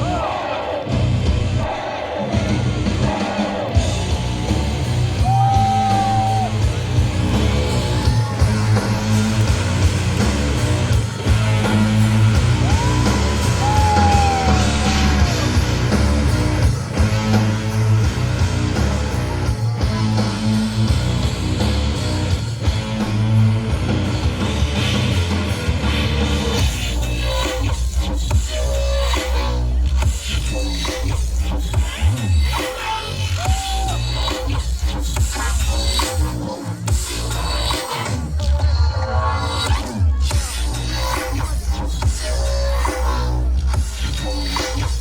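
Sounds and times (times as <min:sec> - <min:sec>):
loud rock music: 0:00.0 - 0:45.0.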